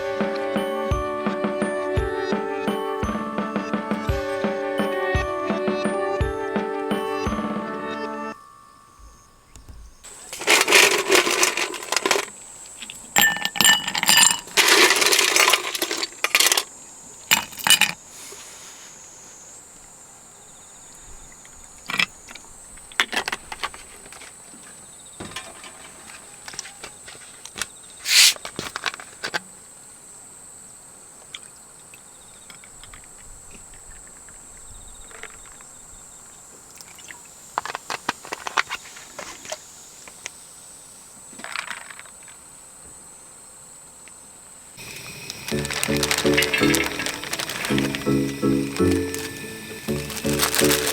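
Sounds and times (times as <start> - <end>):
metal objects clinking: 10.1 - 12.4, 13.2 - 16.7, 17.3 - 18.0, 44.8 - 50.9.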